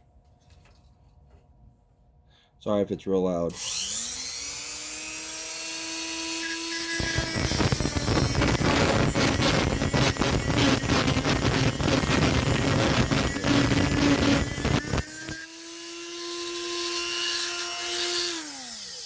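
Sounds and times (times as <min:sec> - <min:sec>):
sharpener motor whine: 0:03.6 - 0:19.0
harsh grinding noise: 0:06.3 - 0:15.7.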